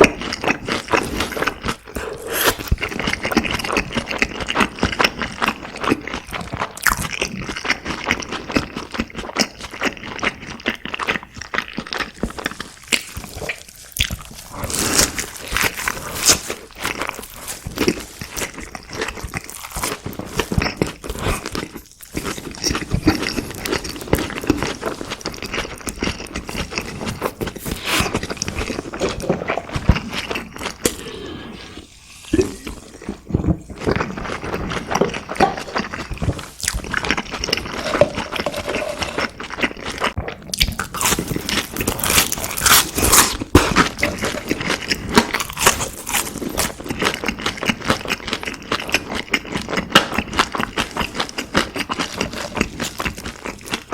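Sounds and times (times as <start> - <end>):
chewing crispy food: 0.0 - 53.9.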